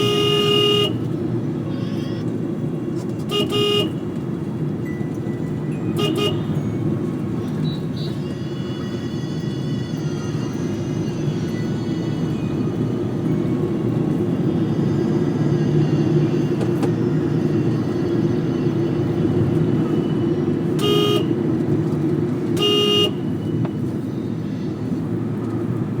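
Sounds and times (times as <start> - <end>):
car horn toots: 0.0 - 1.1, 3.3 - 4.0, 6.0 - 6.6, 20.8 - 21.4, 22.6 - 23.4
road and engine rumble in car: 0.0 - 26.0.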